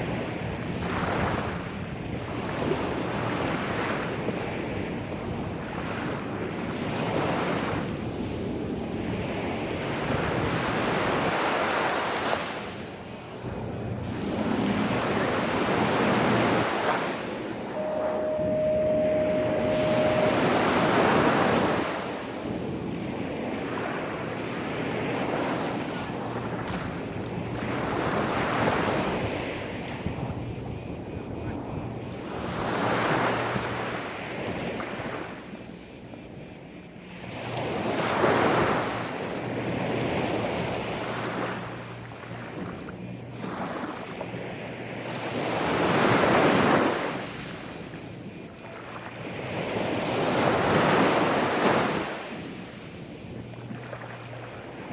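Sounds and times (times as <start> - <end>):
sea waves washing onto beach: 0.0 - 35.7, 37.1 - 54.9.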